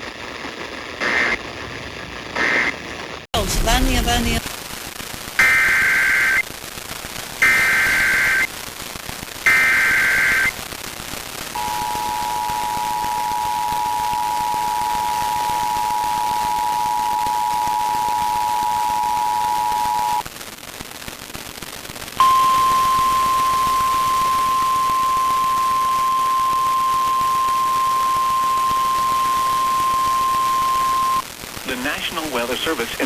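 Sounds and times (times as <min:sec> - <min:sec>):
radio static: 0:00.0 - 0:06.6, 0:07.4 - 0:08.7, 0:09.4 - 0:10.7, 0:11.5 - 0:21.5, 0:22.1 - 0:33.0
steady warning alarm tone: 0:07.4 - 0:08.5, 0:09.5 - 0:10.5, 0:11.6 - 0:20.2, 0:22.2 - 0:31.2
two-tone alert signal: 0:11.6 - 0:20.2.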